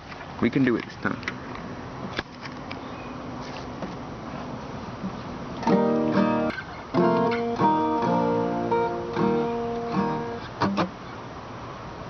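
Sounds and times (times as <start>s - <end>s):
acoustic guitar strumming chords: 5.6s - 10.9s.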